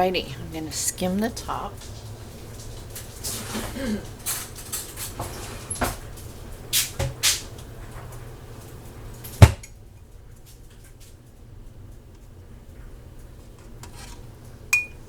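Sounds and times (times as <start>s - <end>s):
kitchen utensils clinking: 0.0s - 6.1s, 14.8s - 15.0s
spoon knocking pot: 14.8s - 15.0s.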